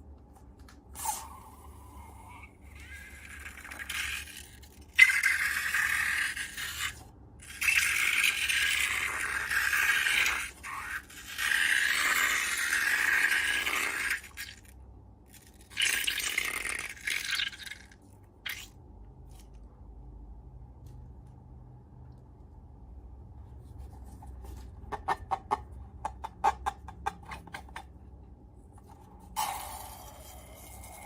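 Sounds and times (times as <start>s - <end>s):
crackly scraping of slime materials: 2.5s - 18.6s.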